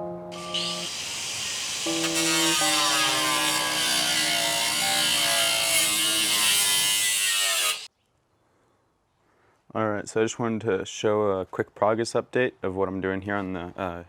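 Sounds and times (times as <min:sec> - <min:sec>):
background music: 0:00.0 - 0:01.1, 0:01.9 - 0:07.0
welding arc buzzing and crackling: 0:00.4 - 0:07.9.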